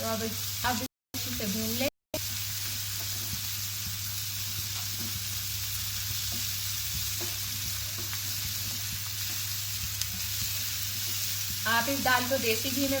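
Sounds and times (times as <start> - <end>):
masala sizzling in a pan: 0.0 - 13.0
spoon tapping a pan: 6.2 - 10.3.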